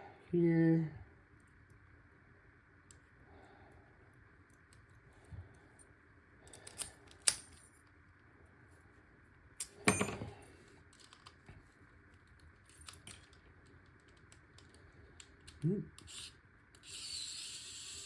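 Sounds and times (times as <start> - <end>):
metallic clicks of padlock and tools: 6.5 - 7.7.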